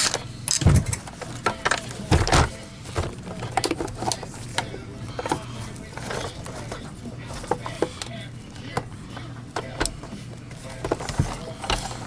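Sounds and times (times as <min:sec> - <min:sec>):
tools and plastic parts clicking: 0:00.0 - 0:10.1, 0:10.8 - 0:12.0
steady low hum: 0:00.0 - 0:12.0.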